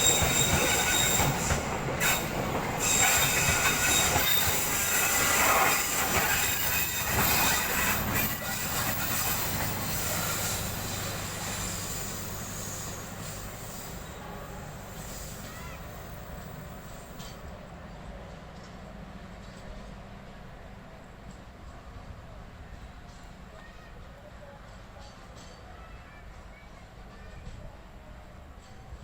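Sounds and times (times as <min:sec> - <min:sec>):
wheels squealing: 0:00.0 - 0:16.7
train wheel noise: 0:00.0 - 0:29.0.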